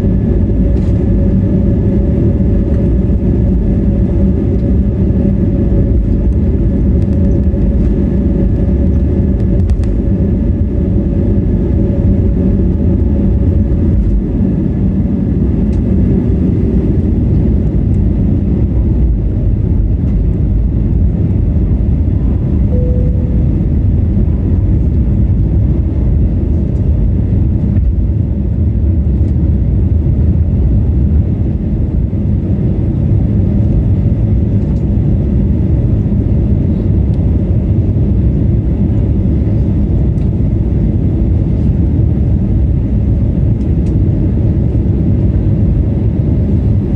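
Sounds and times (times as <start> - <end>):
airliner cabin rumble: 0.0 - 46.9
faint steady hum: 18.7 - 27.1.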